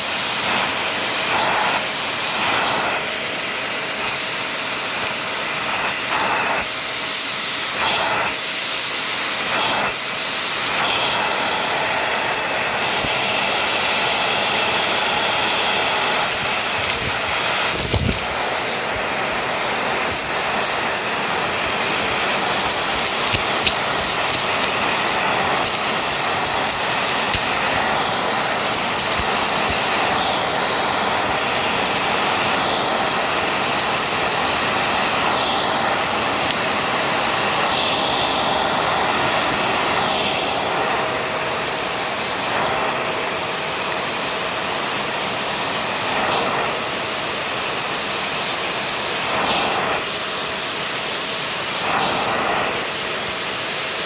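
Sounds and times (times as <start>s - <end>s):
vacuum cleaner running: 0.0s - 54.0s
scattered clicks: 12.2s - 13.2s, 16.2s - 18.4s, 19.2s - 30.0s, 31.2s - 32.6s, 33.2s - 35.3s, 36.0s - 36.8s.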